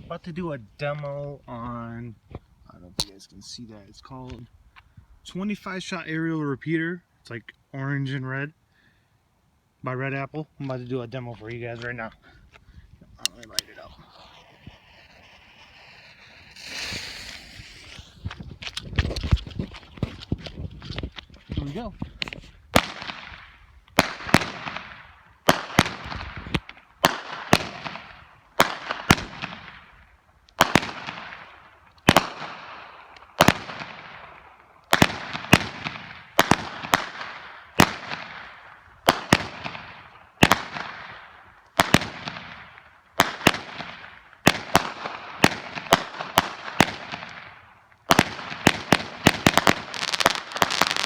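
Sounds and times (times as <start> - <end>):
firework crackle: 13.4 - 20.4, 22.7 - 51.0
firework bangs: 13.5 - 18.6, 22.7 - 29.9, 30.6 - 51.0.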